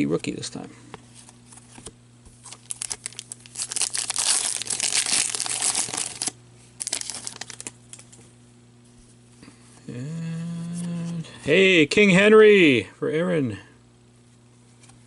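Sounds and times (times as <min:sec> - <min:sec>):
foil wrapper crinkling: 0:01.8 - 0:08.2.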